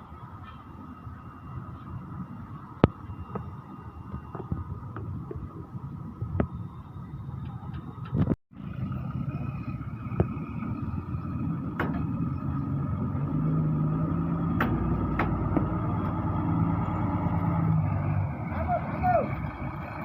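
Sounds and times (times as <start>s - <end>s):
vehicle engine running: 7.7s - 20.0s.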